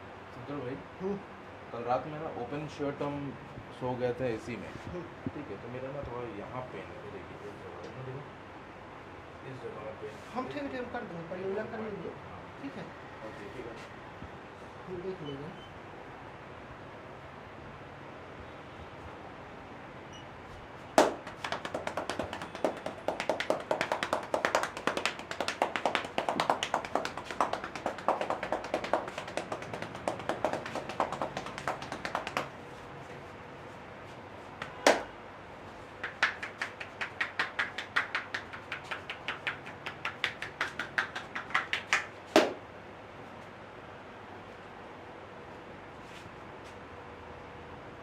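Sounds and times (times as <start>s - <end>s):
loud hand slaps: 21.0s - 32.5s, 34.6s - 35.1s, 36.0s - 42.6s
rapid hand tapping: 21.0s - 32.6s, 34.6s - 35.1s, 36.0s - 42.6s.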